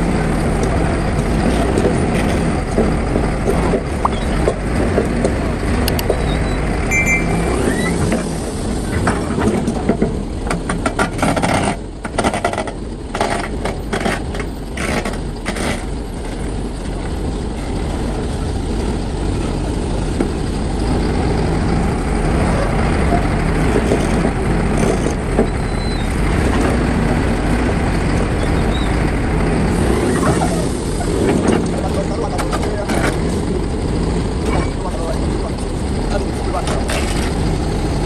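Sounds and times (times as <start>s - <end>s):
diesel earthmoving machinery running: 0.0s - 38.0s.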